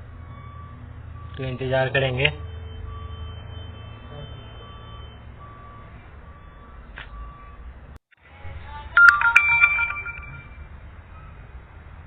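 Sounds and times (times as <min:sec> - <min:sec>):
electronic phone tone: 0:09.0 - 0:10.7.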